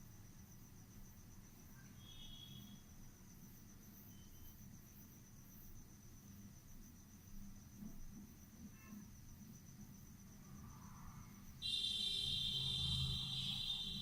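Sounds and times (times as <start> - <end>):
faint high-pitched pulsing tone: 10.6 - 14.0.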